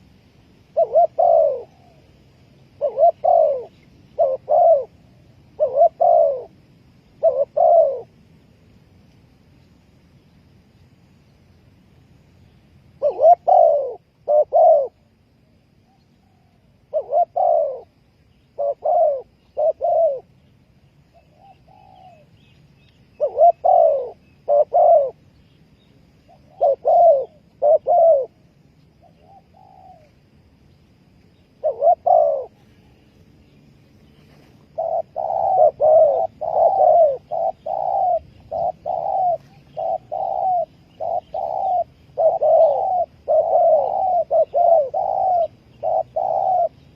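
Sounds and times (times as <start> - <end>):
dove cooing: 0.7 - 8.2, 13.0 - 15.1, 15.9 - 20.4, 21.1 - 25.6, 26.2 - 28.4, 29.0 - 30.2, 31.4 - 33.1, 33.9 - 46.9.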